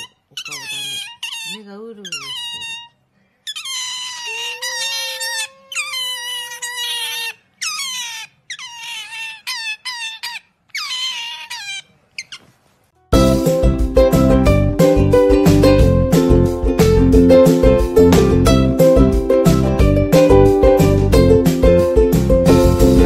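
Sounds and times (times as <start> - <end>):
otter squealing: 0.0 - 12.6
music: 13.0 - 23.0.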